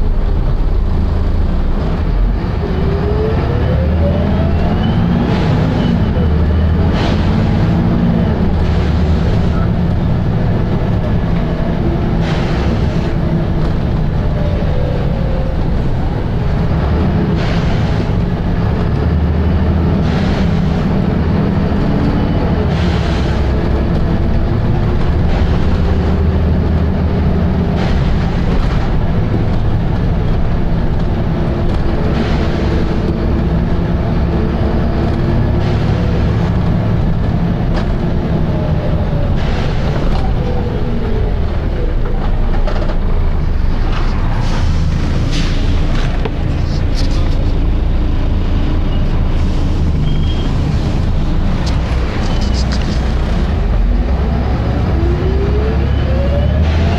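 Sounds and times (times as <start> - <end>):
bus diesel engine: 0.0 - 56.9
short air hisses: 44.4 - 45.9.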